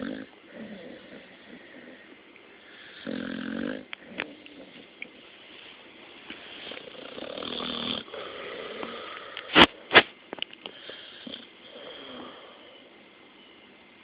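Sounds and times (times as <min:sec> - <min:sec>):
dog snoring: 0:00.0 - 0:04.9, 0:06.8 - 0:09.6, 0:10.7 - 0:12.9.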